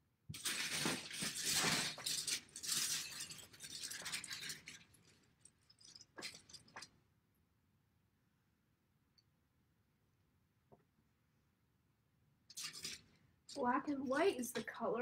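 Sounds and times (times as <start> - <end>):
plastic bricks clattering: 0.3 - 6.9, 12.5 - 13.7.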